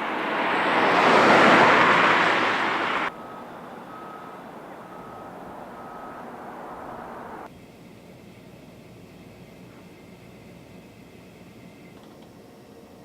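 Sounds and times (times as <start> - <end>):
loud rushing roar: 0.0 - 7.5
short electronic beeps: 3.1 - 6.8.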